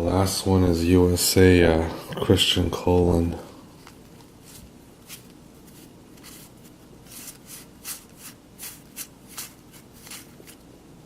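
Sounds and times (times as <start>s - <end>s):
cards and packs rustling: 3.8s - 10.7s.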